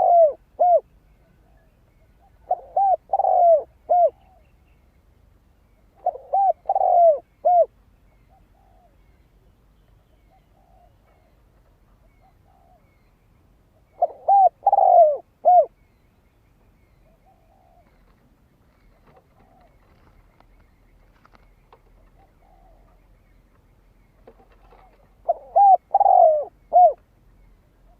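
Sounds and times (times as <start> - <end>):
dove cooing: 0.0 - 4.5, 5.9 - 9.2, 10.1 - 13.0, 13.8 - 15.8, 17.0 - 23.1, 24.2 - 27.0
faint dove coos: 0.0 - 4.6, 5.8 - 9.3, 10.0 - 13.1, 13.7 - 15.8, 17.0 - 20.5, 21.7 - 23.1, 24.2 - 27.0.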